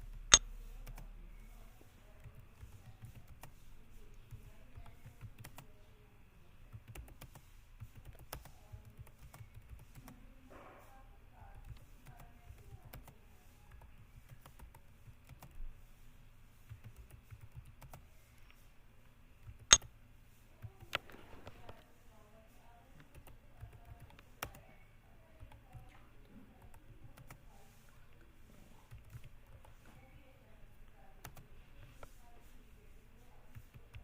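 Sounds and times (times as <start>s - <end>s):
keyboard typing: 0.1s - 5.8s, 6.7s - 10.2s, 11.4s - 15.8s, 16.6s - 18.6s, 19.4s - 19.9s, 20.6s - 21.8s, 22.9s - 30.1s, 31.2s - 32.2s, 33.5s - 34.0s.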